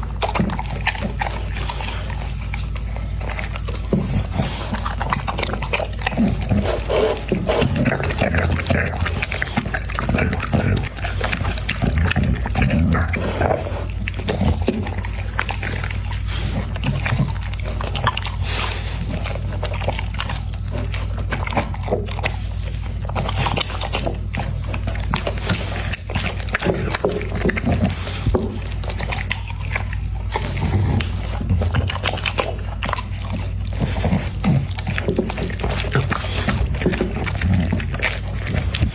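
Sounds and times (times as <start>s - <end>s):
dog eating noisily: 0.0s - 38.9s.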